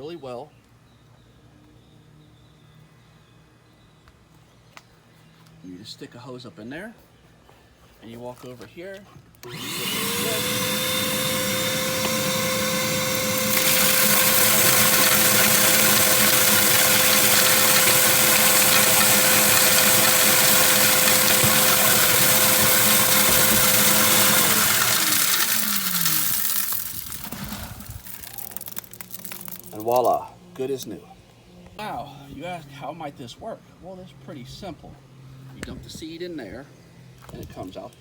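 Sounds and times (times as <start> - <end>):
shop vac motor whining: 9.4 - 29.9.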